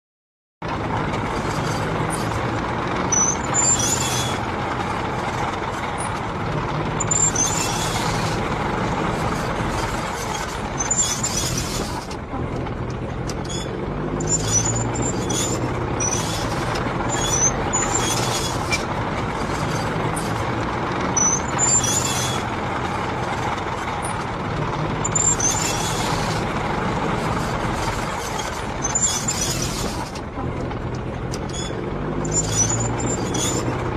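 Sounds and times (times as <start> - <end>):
tank engine drone: 0.6 - 33.9
tracks rumbling: 0.6 - 33.9
short high squeal: 3.1 - 4.4, 7.0 - 8.4, 9.9 - 11.9, 13.4 - 18.9, 21.2 - 22.5, 25.1 - 26.4, 28.2 - 30.1, 31.5 - 33.7.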